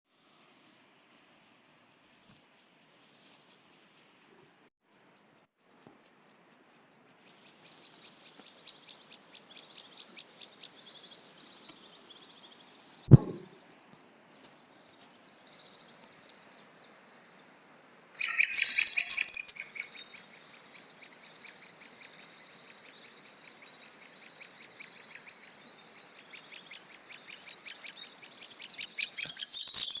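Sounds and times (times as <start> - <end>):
low thump: 13.1 - 13.6
bird chirps and trills: 18.2 - 30.0.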